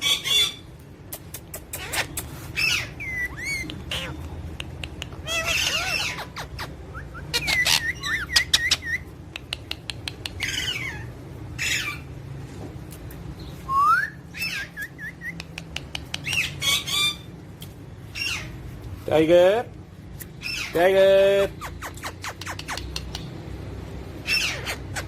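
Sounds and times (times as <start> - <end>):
parrot squawking and whistling: 1.7 - 4.2, 5.2 - 9.0, 10.3 - 12.0, 13.7 - 15.4, 24.2 - 25.0.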